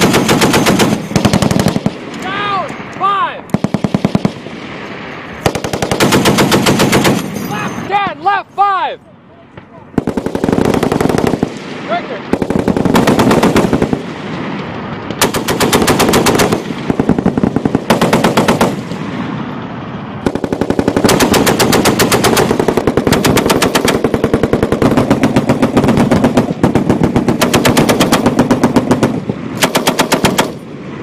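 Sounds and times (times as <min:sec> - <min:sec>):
heavy machine gun bursts: 0:00.0 - 0:02.0, 0:05.4 - 0:07.8, 0:10.0 - 0:11.5, 0:12.3 - 0:14.0, 0:15.2 - 0:18.9, 0:20.2 - 0:30.6
quieter gunfire: 0:00.0 - 0:02.2, 0:03.5 - 0:07.4, 0:09.6 - 0:19.4, 0:20.2 - 0:30.8.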